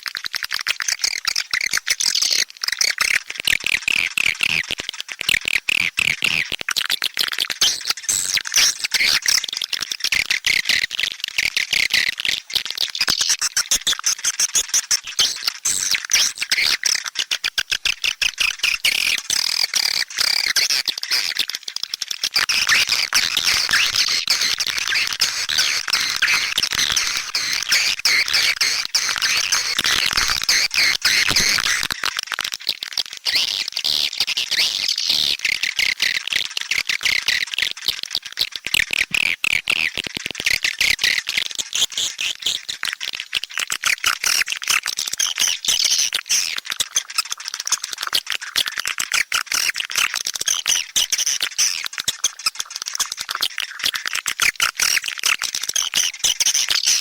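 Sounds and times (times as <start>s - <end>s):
swiftlets twittering and chirping: 18.0s - 21.4s, 22.3s - 32.1s.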